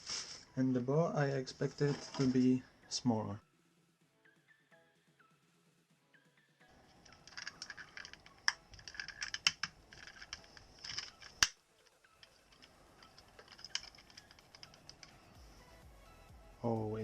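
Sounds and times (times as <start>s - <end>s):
plastic clicks: 6.7s - 15.4s
plastic packaging crackling: 6.8s - 11.5s.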